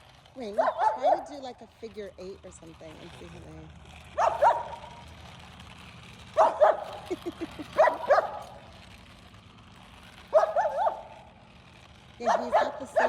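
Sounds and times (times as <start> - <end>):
high-pitched dog barking: 4.2 - 4.9, 6.4 - 6.9, 7.8 - 8.4, 10.3 - 11.1.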